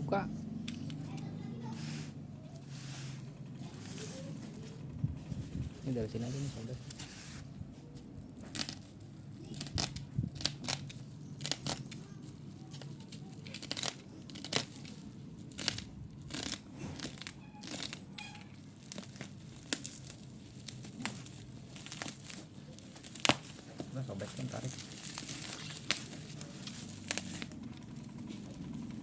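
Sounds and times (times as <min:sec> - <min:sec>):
package wrapping tearing: 0:08.4 - 0:18.0, 0:18.6 - 0:27.6.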